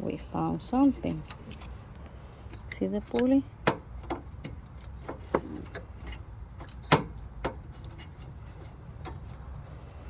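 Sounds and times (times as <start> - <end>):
knocks and clicks of parts handled: 2.5 - 8.3.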